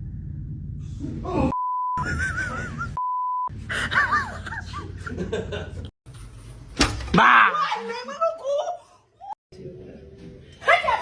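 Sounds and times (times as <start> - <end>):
censor bleeps: 1.6 - 2.0.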